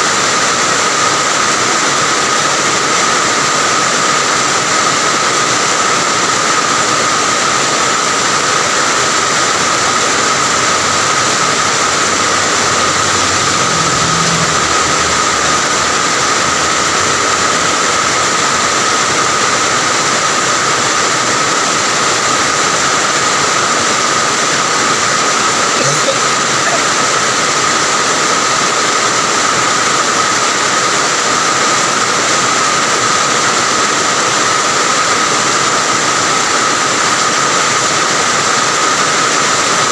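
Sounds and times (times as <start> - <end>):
heavy rain: 0.0 - 39.9
high-pitched tone: 10.7 - 17.2, 25.8 - 27.3.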